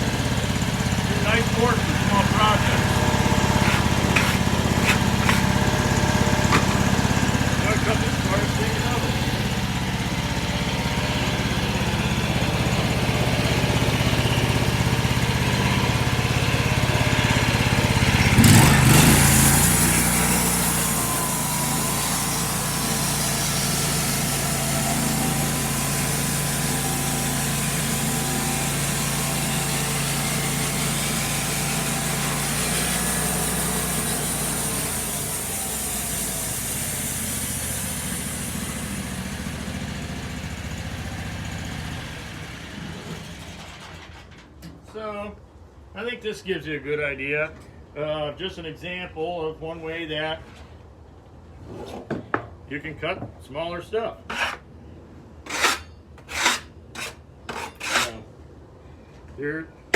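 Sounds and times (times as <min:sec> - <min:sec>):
bandsaw mill engine running: 0:00.0 - 0:44.4, 0:54.3 - 0:54.6, 0:55.4 - 0:58.2
saw blade cutting wood: 0:01.0 - 0:12.0, 0:12.6 - 0:40.8, 0:54.3 - 0:54.7, 0:55.5 - 0:58.2.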